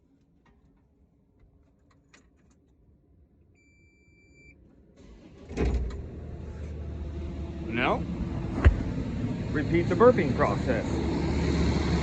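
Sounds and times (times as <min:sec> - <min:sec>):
diesel engine cranking and running: 0:05.0 - 0:12.0.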